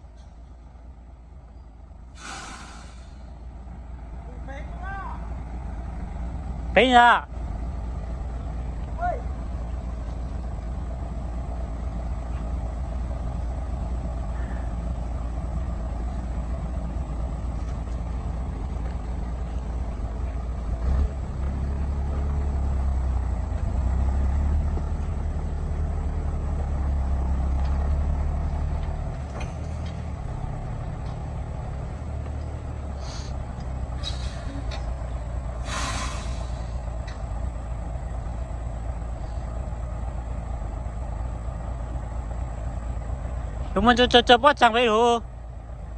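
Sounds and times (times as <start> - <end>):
truck diesel engine under load: 0.0 - 45.9
air hiss: 2.1 - 3.4, 33.0 - 33.4, 35.6 - 36.9.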